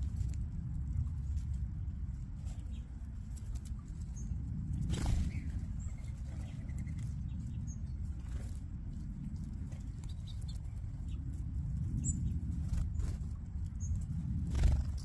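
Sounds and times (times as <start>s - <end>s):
birds pecking and scratching: 0.0s - 15.0s
low rumble: 0.0s - 15.0s
flurry of wings: 4.7s - 7.1s, 9.4s - 15.0s.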